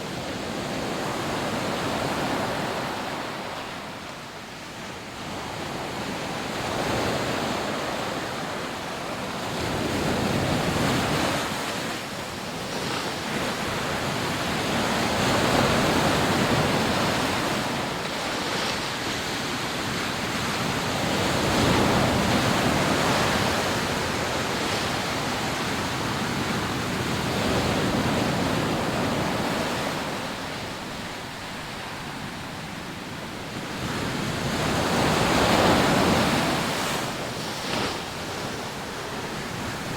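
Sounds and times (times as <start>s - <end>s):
sea waves breaking on beach: 0.0s - 39.9s.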